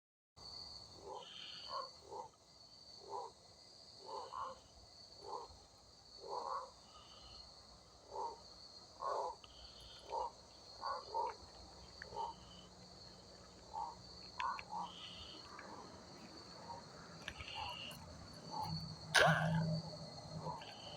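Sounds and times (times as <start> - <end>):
insect chorus trilling: 0.4 - 20.9.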